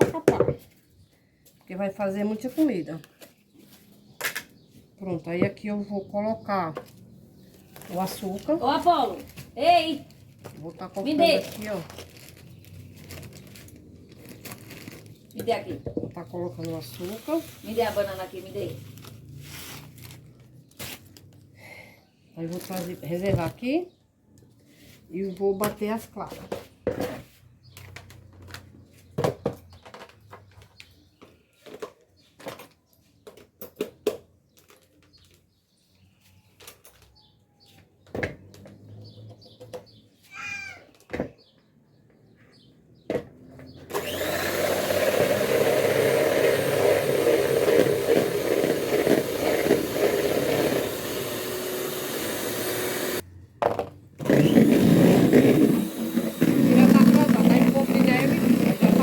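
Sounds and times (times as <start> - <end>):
electric mixer beating: 43.9 - 53.2, 54.2 - 59.0.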